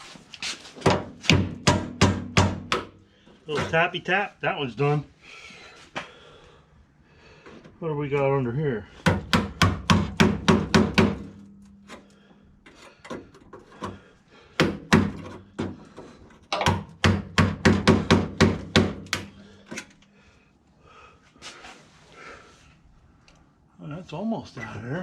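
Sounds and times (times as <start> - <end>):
hammer tapping on sheet metal: 0.8 - 3.0, 9.0 - 11.5, 14.6 - 15.8, 16.6 - 19.4.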